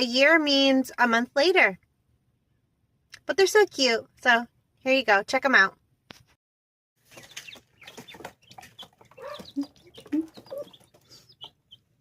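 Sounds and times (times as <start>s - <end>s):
baby chicks peeping: 7.0s - 12.0s.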